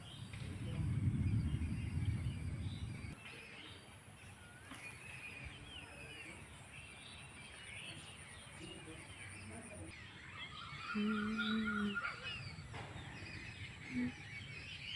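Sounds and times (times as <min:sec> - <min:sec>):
loud low rumble: 0:00.0 - 0:03.2
birds chirping and whistling: 0:00.0 - 0:14.9.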